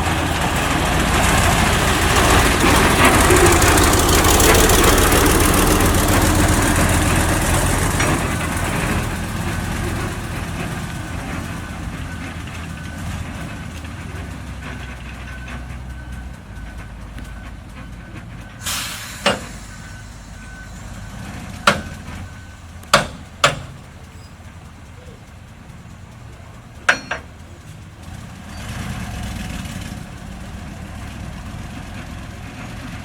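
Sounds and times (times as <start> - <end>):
heavy machine diesel engine: 0.0 - 33.0
reversing alarm beeping: 14.8 - 22.8
sharp metal clanks: 19.0 - 20.3, 21.6 - 22.2, 22.9 - 24.3, 26.8 - 27.8.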